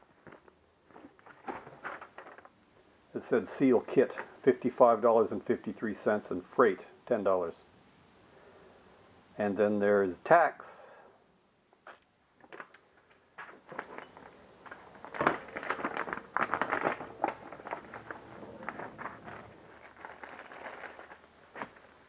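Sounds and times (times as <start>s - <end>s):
plastic bag crinkling: 13.5s - 22.0s.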